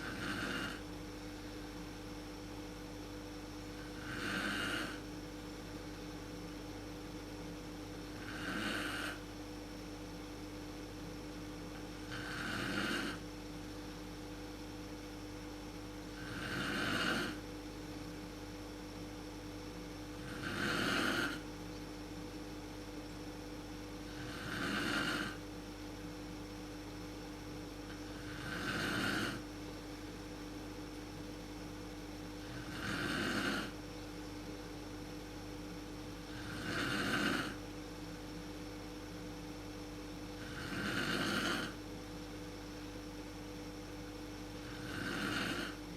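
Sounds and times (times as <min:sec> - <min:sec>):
woman snoring: 0:00.0 - 0:00.8, 0:03.8 - 0:05.0, 0:08.1 - 0:09.2, 0:12.0 - 0:13.2, 0:16.2 - 0:17.4, 0:20.2 - 0:21.4, 0:24.1 - 0:25.4, 0:28.1 - 0:29.4, 0:32.4 - 0:33.8, 0:36.3 - 0:37.6, 0:40.4 - 0:41.8, 0:44.6 - 0:45.9
steady low hum: 0:00.0 - 0:45.9.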